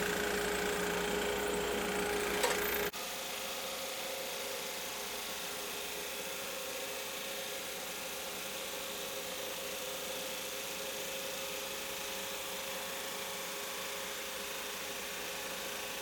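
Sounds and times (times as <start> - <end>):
power tool humming: 0.0 - 2.9.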